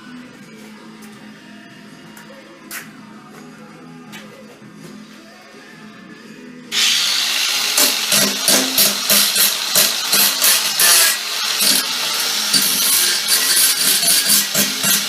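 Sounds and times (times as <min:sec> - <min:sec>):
power grinder grinding steel: 0:06.7 - 0:15.0.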